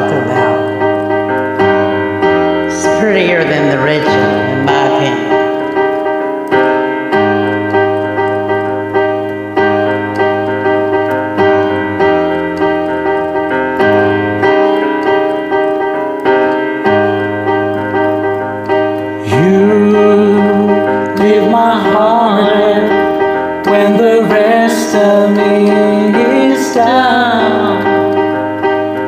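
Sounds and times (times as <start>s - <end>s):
piano chords: 0.0s - 29.0s.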